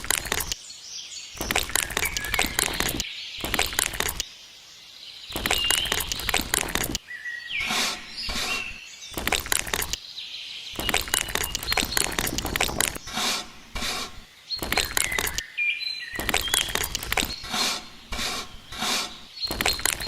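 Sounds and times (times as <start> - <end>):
scraping and clicking: 0.0 - 0.6, 1.4 - 4.2, 5.3 - 7.0, 7.6 - 10.0, 10.8 - 15.4, 16.2 - 20.0
birds chirping: 0.0 - 20.0.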